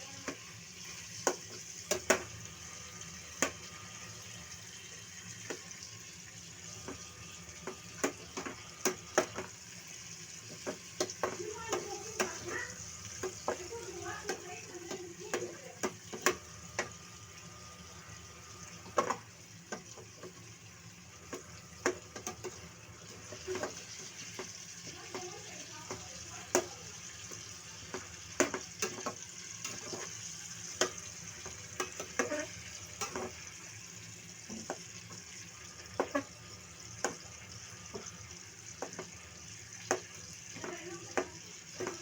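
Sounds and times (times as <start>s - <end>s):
chicken sizzling in a pan: 0.0s - 42.0s
utensil scraping a pan: 21.3s - 33.7s, 34.5s - 38.2s.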